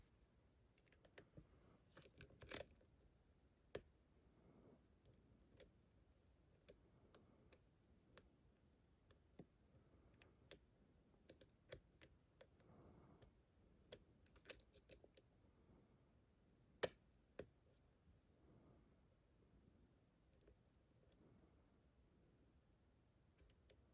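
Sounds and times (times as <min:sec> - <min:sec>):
lock picking metallic clicks: 0:02.0 - 0:02.8, 0:13.9 - 0:15.2, 0:16.8 - 0:17.5.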